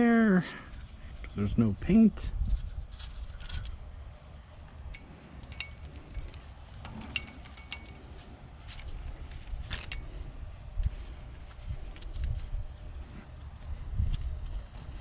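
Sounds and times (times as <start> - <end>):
metal tools clinking: 4.9 - 10.1
short ringing metal clinks: 5.0 - 8.2.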